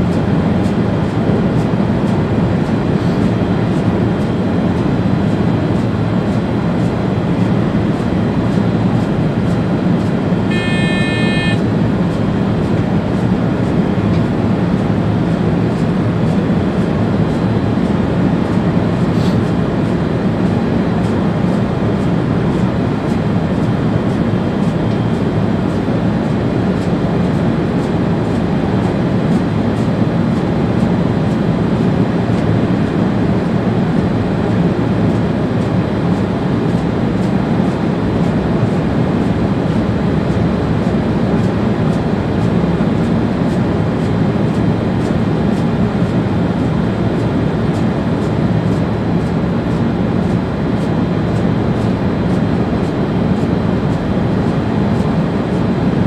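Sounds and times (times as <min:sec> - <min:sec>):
train running noise: 0:00.0 - 0:56.0
short electronic beep: 0:10.5 - 0:11.6.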